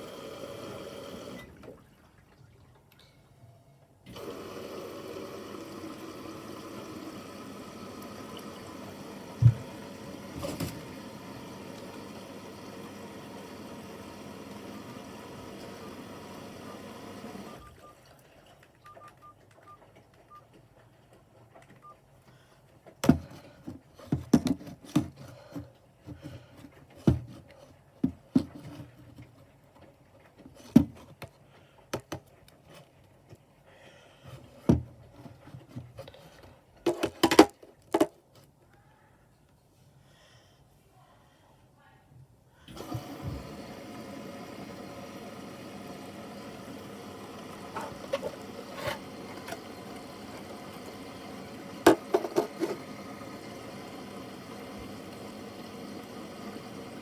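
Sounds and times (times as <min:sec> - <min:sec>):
washing machine filling with water: 0:00.0 - 0:02.9, 0:04.1 - 0:19.0, 0:42.7 - 0:57.0
knocks and thuds from drum: 0:09.4 - 0:09.7.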